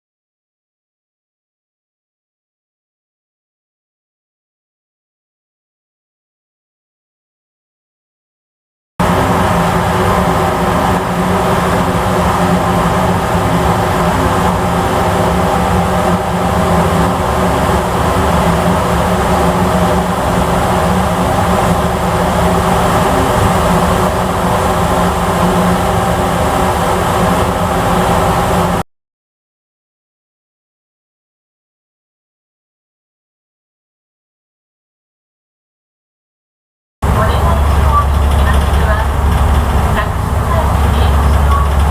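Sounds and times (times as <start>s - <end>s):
ferry engines droning: 9.0s - 28.8s, 37.0s - 41.9s
low tones: 9.0s - 28.8s, 37.0s - 41.9s
wind and water noise: 9.0s - 28.8s, 37.0s - 41.9s.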